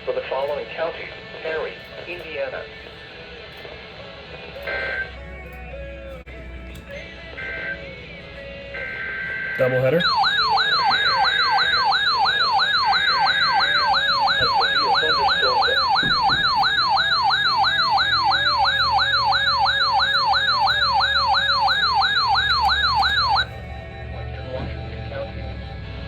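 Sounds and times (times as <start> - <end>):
electronic siren yelping: 4.4 - 26.0.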